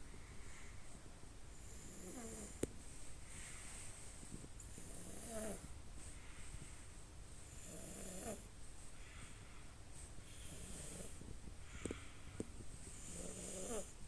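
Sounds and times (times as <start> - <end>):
baby snoring: 1.6 - 2.6, 4.8 - 5.7, 7.5 - 8.5, 10.4 - 11.2, 12.9 - 14.0.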